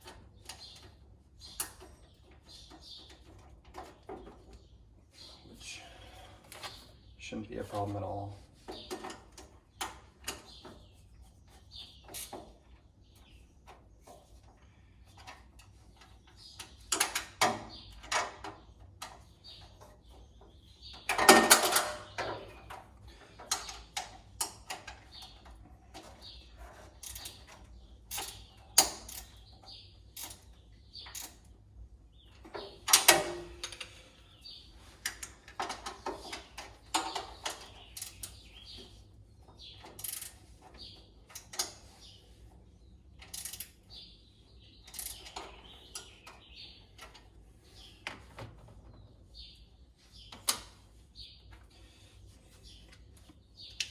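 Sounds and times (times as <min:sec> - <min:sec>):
metal tools clicking and knocking: 0:21.0 - 0:26.3, 0:32.4 - 0:34.0.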